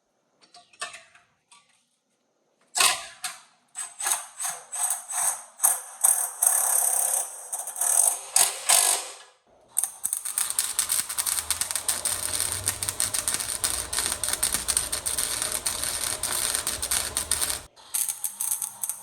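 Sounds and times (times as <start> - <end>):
welder arc crackling: 9.8 - 19.0.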